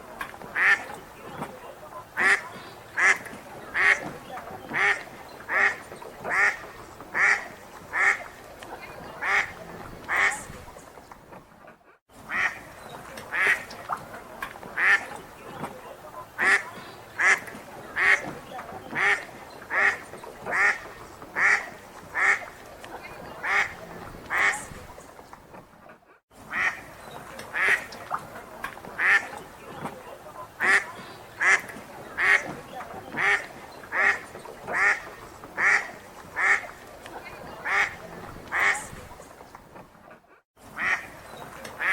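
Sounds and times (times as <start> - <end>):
low outdoor background: 0.0 - 41.9
ducks quacking loudly: 0.4 - 10.7, 12.2 - 24.9, 26.4 - 39.1, 40.7 - 41.9.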